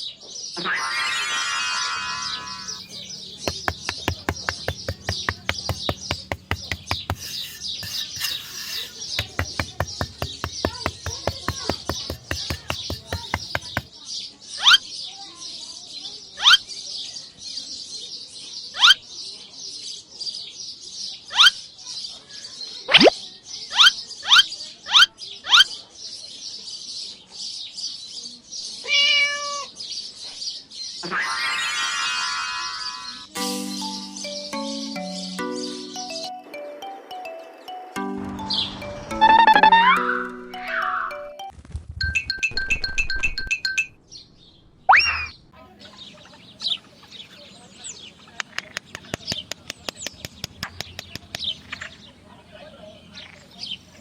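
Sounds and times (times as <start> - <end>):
small birds chirping: 0.0 - 28.8, 44.1 - 54.0
rapid even clicking: 2.8 - 13.9
steady pitched call: 6.3 - 9.2.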